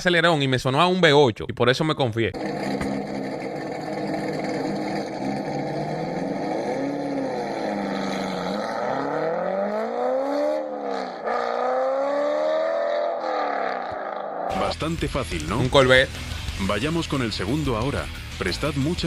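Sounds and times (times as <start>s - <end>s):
car engine accelerating: 2.4s - 16.3s.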